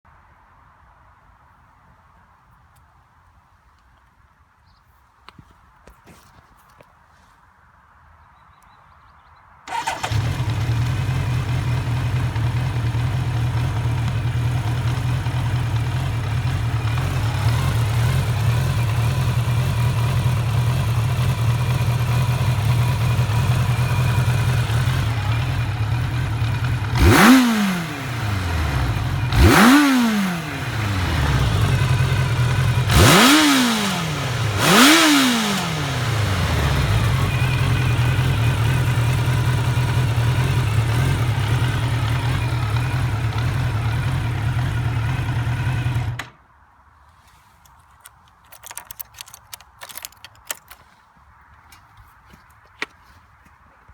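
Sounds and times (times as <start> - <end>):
motorcycle engine idling: 9.7 - 46.3
engine throttle blips: 9.7 - 46.4
motorcycle engine starting: 9.7 - 46.4, 48.0 - 51.0.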